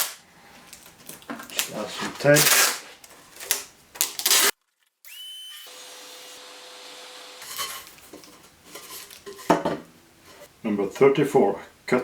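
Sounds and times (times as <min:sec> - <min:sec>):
masking tape ripping: 0:00.0 - 0:00.2, 0:01.5 - 0:05.4.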